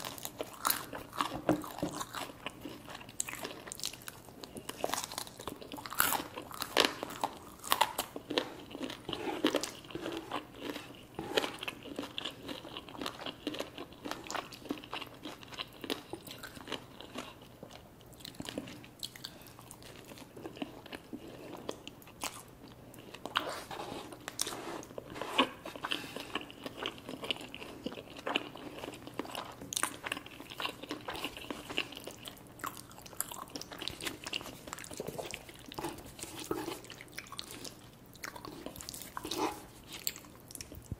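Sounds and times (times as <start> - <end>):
crunchy bites and chewing: 0.0 - 17.5.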